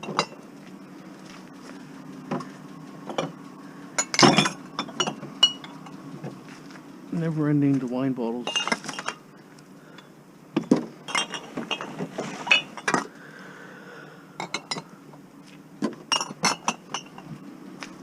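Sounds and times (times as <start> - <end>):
glass bottles clinking: 0.0 - 0.4, 2.3 - 6.0, 8.4 - 9.2, 9.9 - 13.1, 14.4 - 14.9, 15.8 - 17.3.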